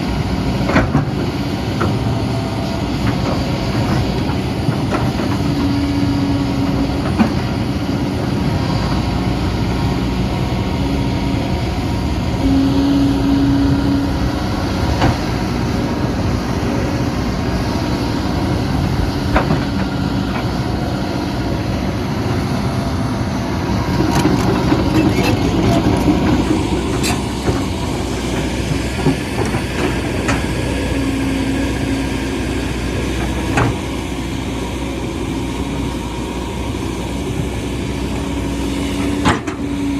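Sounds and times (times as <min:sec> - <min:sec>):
excavator engine running: 0:00.0 - 0:39.9.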